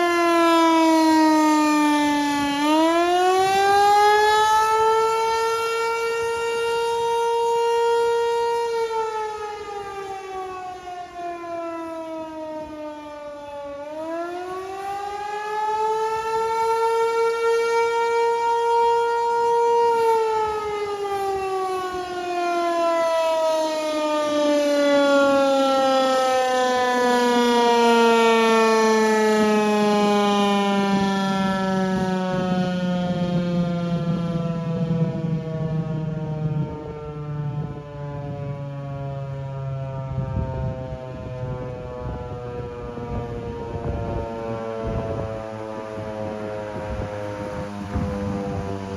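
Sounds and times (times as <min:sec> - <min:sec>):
civil defense siren: 0:00.0 - 0:48.9.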